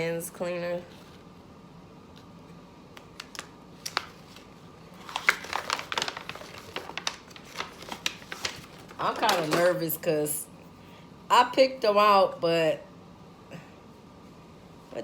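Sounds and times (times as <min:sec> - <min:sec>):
packaging crinkling: 0:03.0 - 0:09.9.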